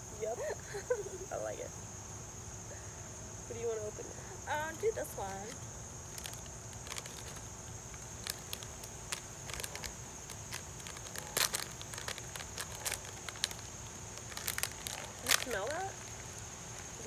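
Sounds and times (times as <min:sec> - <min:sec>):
plastic packaging crinkling: 0:04.7 - 0:17.0.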